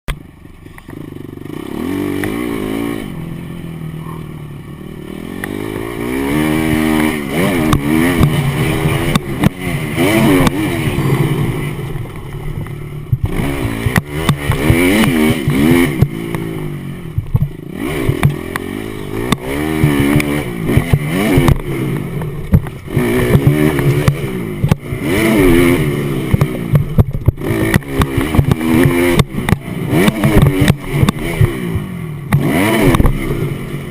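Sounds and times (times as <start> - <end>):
motocross bike engine revving: 0.1 - 33.9
sharp knocks and clatter: 6.6 - 10.7, 12.0 - 16.5, 17.1 - 25.4, 26.2 - 33.2.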